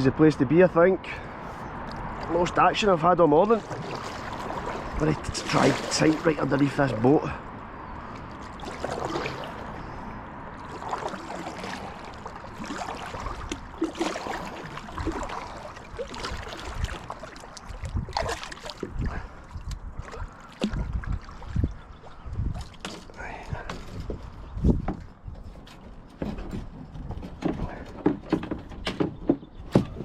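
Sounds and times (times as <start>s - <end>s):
water lapping around kayak: 1.2s - 30.0s
knocks and clicks: 23.7s - 30.0s.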